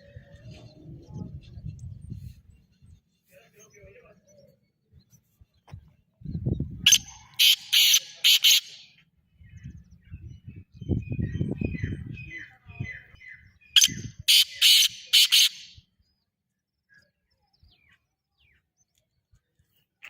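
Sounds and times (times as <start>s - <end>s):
bird harsh grating calls: 6.9s - 8.9s, 13.8s - 15.8s.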